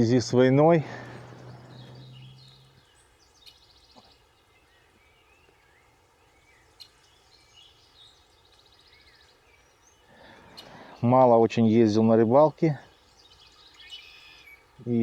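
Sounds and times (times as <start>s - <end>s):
fast high bird trill: 0.0s - 2.9s
songbirds chirping: 0.0s - 15.0s.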